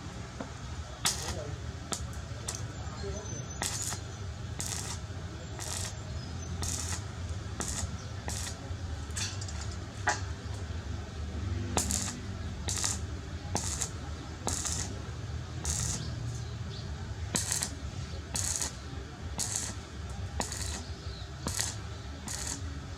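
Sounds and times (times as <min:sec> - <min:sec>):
steady low hum: 0:00.0 - 0:22.9
metal clinks and scrapes: 0:07.6 - 0:10.2.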